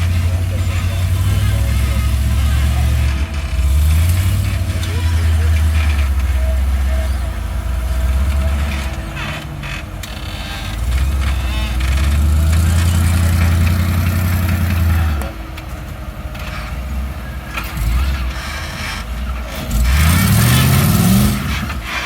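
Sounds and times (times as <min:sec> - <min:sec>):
off-road vehicle engine droning: 0:00.0 - 0:22.0.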